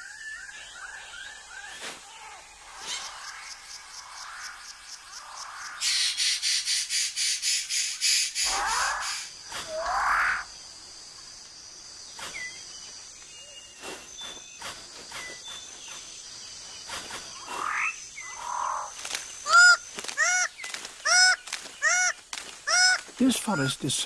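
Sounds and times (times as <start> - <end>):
bird harsh rising calls: 0.0 - 10.6
high insect drone: 0.0 - 24.0.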